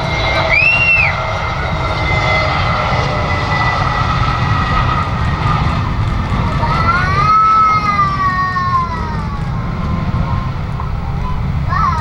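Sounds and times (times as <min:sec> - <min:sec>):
jet engines rumbling and whining: 0:00.0 - 0:12.0
short rising whistle: 0:00.1 - 0:01.6.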